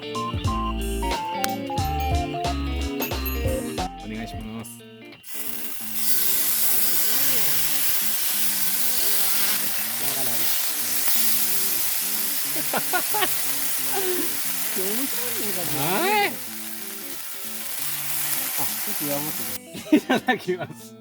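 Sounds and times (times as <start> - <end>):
food sizzling in a pan: 5.2 - 19.7.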